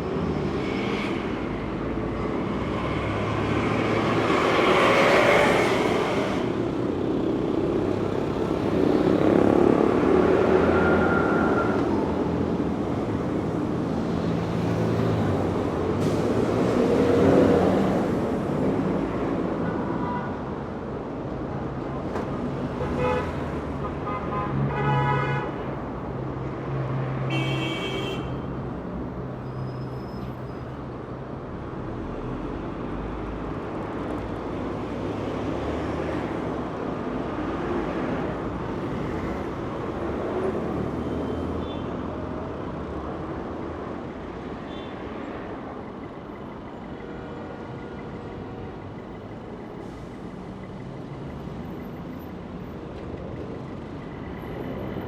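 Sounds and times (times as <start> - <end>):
heavy traffic rumbling: 0.0 - 55.0
car horn toots: 27.3 - 28.4.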